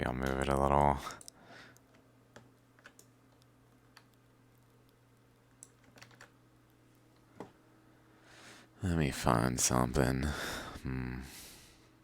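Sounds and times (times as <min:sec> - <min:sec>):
low steady hum: 0:00.0 - 0:12.0
faint computer clicks: 0:00.2 - 0:07.6.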